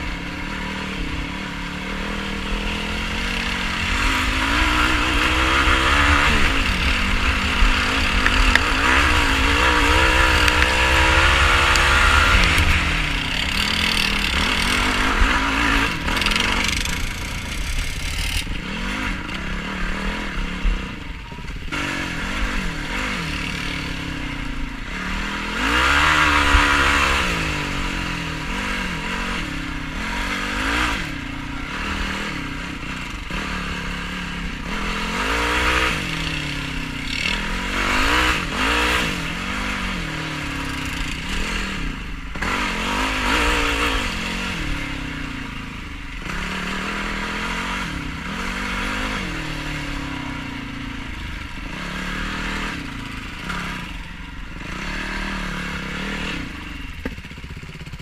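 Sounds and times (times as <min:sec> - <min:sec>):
quad engine revving: 0:00.0 - 0:58.0.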